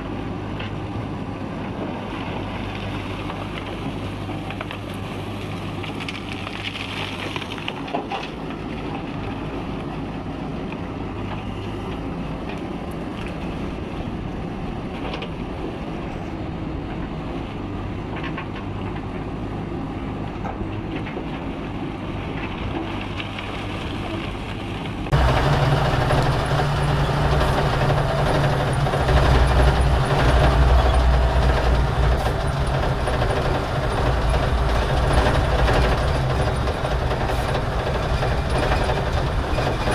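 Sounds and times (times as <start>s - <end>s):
heavy diesel engine running: 15.6s - 39.9s.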